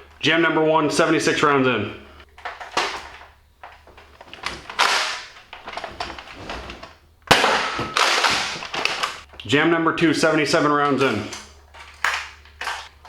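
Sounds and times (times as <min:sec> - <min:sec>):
plastic clicks and rattles of toy blaster: 0:02.2 - 0:06.4, 0:11.3 - 0:13.0.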